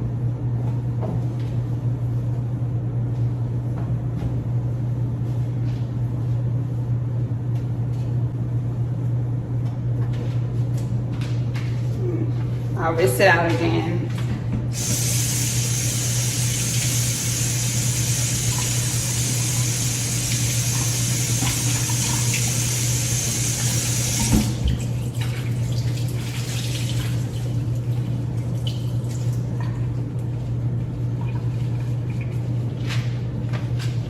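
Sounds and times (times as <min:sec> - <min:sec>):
steady low hum: 0:00.0 - 0:34.0
water tap running: 0:14.7 - 0:29.6.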